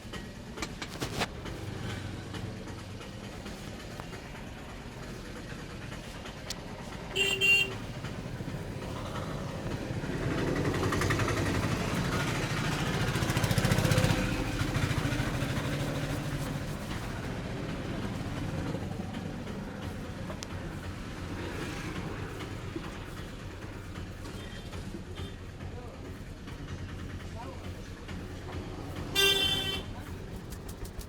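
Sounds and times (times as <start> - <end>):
vehicle engine passing by: 6.8 - 22.7
vehicle horn toot: 7.1 - 7.8, 29.2 - 30.0.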